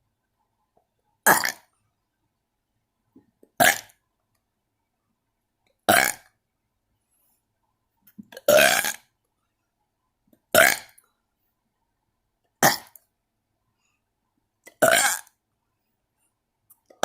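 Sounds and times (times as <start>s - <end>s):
person burping: 1.2s - 1.7s, 3.6s - 4.0s, 5.9s - 6.4s, 8.3s - 9.1s, 10.5s - 11.0s, 12.6s - 13.0s, 14.7s - 15.4s.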